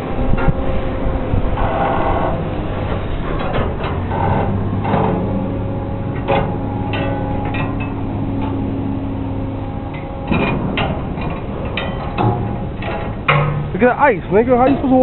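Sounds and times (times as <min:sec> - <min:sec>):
low machine hum: 0:00.0 - 0:15.0
knocks and clatter: 0:01.5 - 0:08.6, 0:09.9 - 0:13.9.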